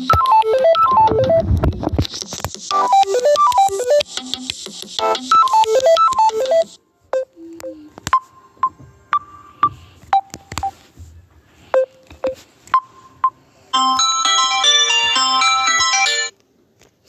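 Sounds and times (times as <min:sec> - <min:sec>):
synthesized ringtone melody: 0:00.0 - 0:01.5, 0:02.6 - 0:10.8, 0:11.7 - 0:16.3.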